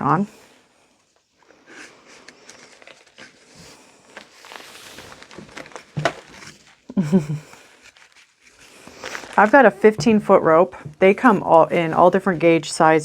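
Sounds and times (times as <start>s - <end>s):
rope rustling and rubbing: 1.0s - 6.9s, 7.6s - 9.8s.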